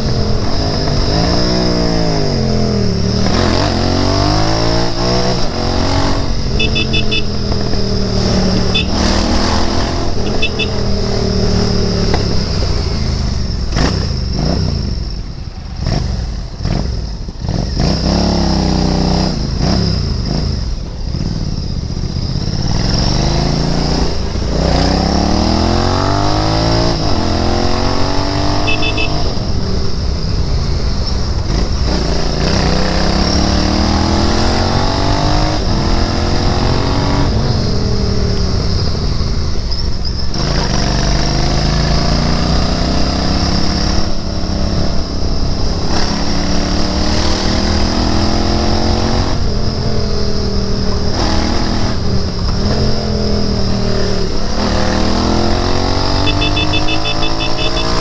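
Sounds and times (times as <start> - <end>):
motorcycle engine revving: 0.0 - 58.0.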